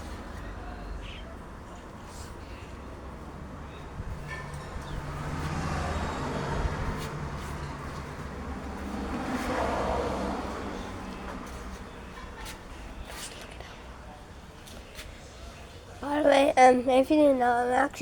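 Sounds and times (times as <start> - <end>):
vehicles passing: 0.0 - 18.0.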